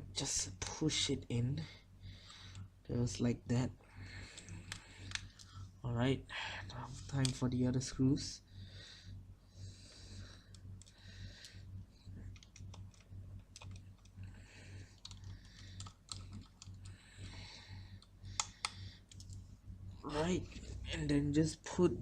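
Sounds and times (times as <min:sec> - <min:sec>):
screwdriver clicking and ticking: 0:12.4 - 0:14.2, 0:15.0 - 0:16.9, 0:18.0 - 0:19.4.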